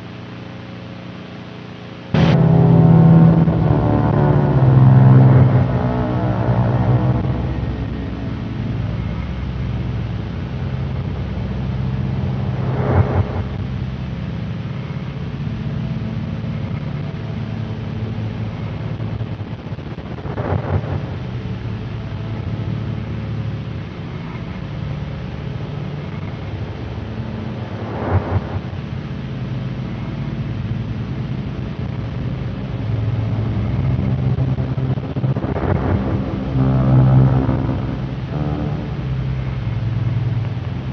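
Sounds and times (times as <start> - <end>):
low droning rumble: 1.2 - 40.9
short surge: 2.2 - 9.4.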